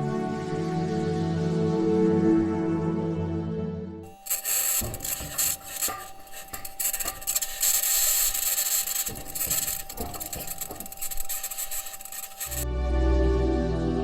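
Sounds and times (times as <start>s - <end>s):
metal wheels grinding over rock: 4.1s - 12.6s
metallic clanks: 4.1s - 12.6s
steady thin tone: 4.1s - 12.6s.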